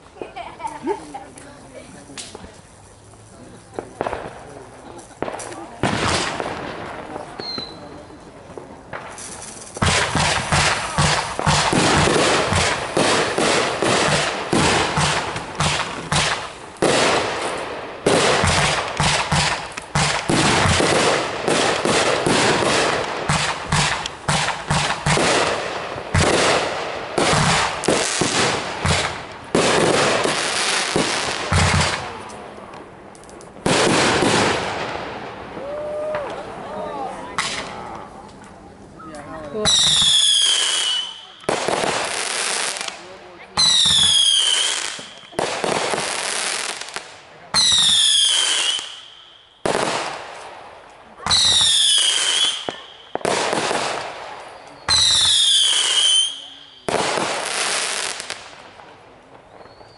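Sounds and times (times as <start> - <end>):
fireworks cracking and banging: 0.0 - 59.9.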